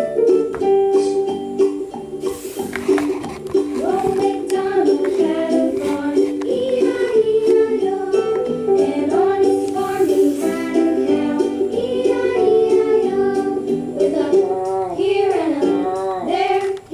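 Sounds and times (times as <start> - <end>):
melodic song with singing: 3.6 - 16.9.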